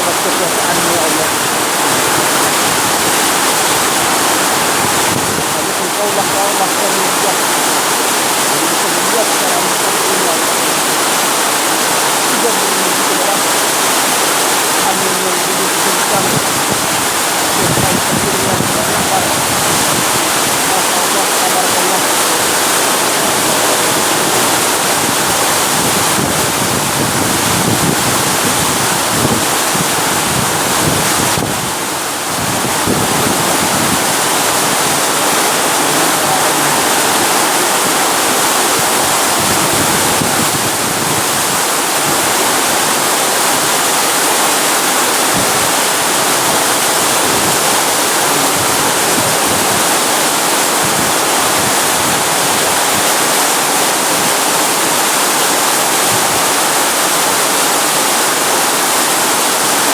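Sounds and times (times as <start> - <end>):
heavy rain pouring: 0.0 - 59.9
strong wind: 0.0 - 59.9.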